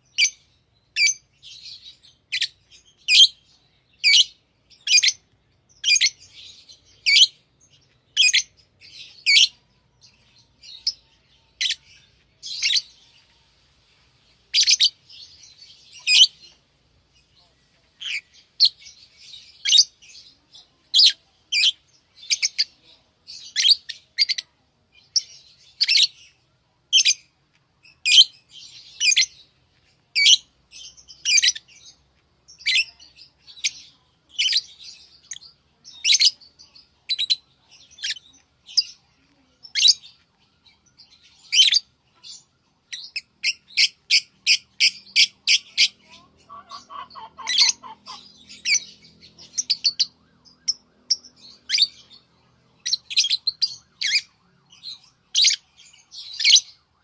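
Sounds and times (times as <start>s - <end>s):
lovebirds chirping: 0.0s - 57.0s
lower chattering bird call: 43.0s - 52.2s.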